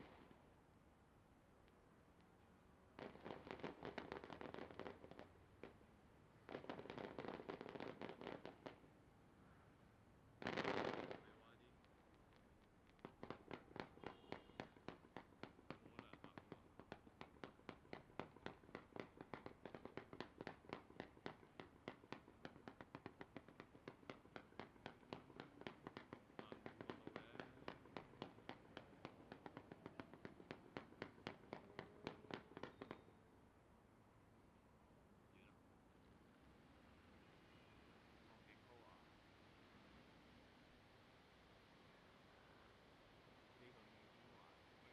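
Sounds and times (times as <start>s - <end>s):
fireworks popping: 3.0s - 5.8s, 6.5s - 8.9s, 10.4s - 33.1s.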